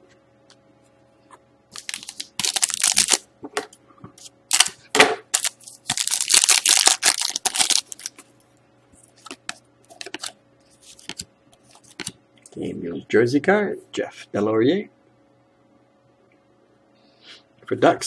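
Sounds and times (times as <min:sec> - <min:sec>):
faint steady hum: 0:00.0 - 0:18.0
cards being handled: 0:01.7 - 0:03.2, 0:04.2 - 0:08.2, 0:09.0 - 0:12.2
wrapper crinkling: 0:01.7 - 0:03.2, 0:04.5 - 0:08.2.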